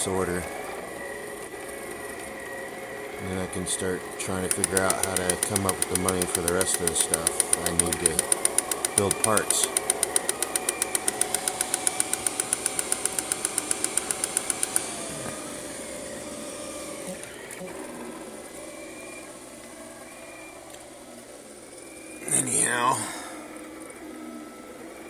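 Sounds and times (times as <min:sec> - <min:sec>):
fan hum: 0:00.0 - 0:25.0
motor whine: 0:00.0 - 0:25.0
print head ticking: 0:04.1 - 0:15.2.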